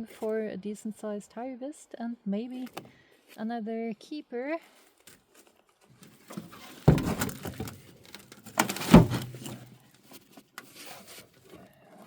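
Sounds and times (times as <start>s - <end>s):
soil rustling and scraping: 4.7s - 11.6s
bucket heavy thumps: 6.2s - 9.8s.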